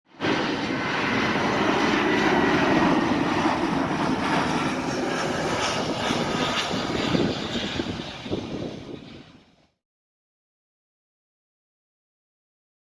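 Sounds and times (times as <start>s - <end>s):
jet engines roaring: 0.1s - 9.8s.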